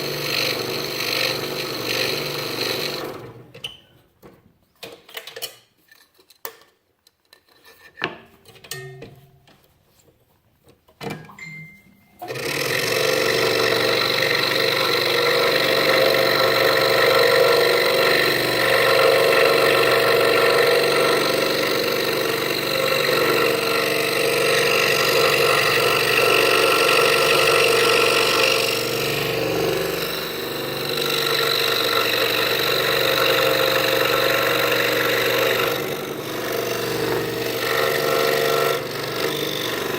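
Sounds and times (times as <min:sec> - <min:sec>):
scroll saw running: 0:00.0 - 0:03.4, 0:12.2 - 0:39.9.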